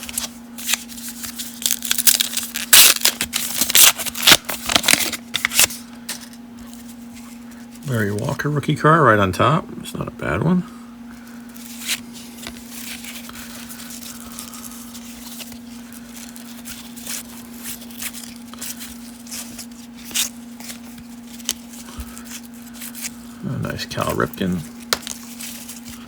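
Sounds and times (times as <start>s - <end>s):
cards flipped by hand: 0.0s - 6.8s, 24.0s - 26.0s
steady low hum: 0.0s - 26.0s.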